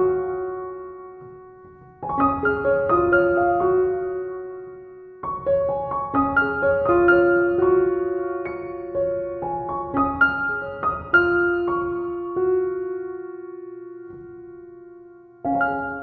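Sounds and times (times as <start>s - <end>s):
piano music: 0.0s - 16.0s.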